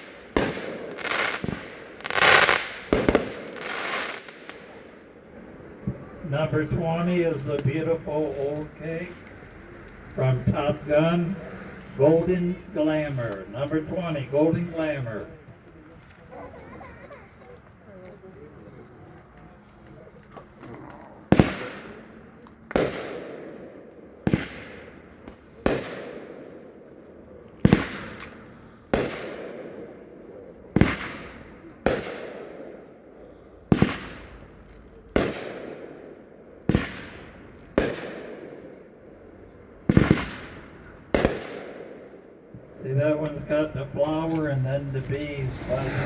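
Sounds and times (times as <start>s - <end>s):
firework bangs: 0.0s - 5.1s, 21.2s - 33.0s, 33.7s - 42.7s.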